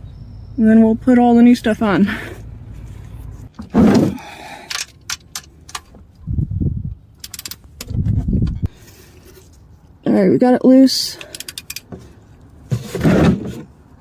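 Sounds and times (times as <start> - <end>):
low rumbling: 5.5 - 8.8
ratchet clicking: 7.2 - 7.6, 11.2 - 11.9.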